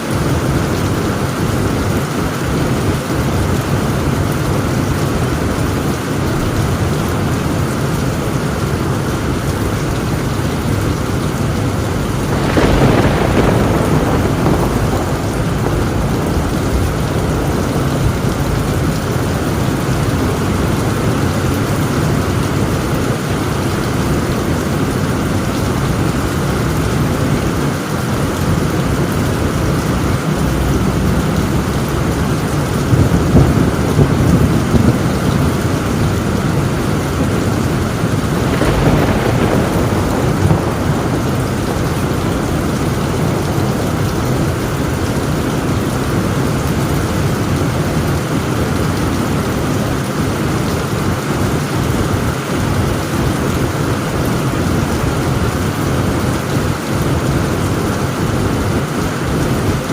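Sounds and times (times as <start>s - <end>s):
heavy rain on a tin roof: 0.0s - 59.9s
thunder clap: 9.2s - 49.0s.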